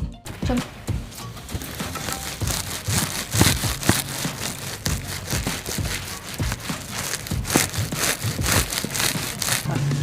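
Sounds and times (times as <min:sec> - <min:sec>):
hands working modelling clay: 0:00.3 - 0:09.7.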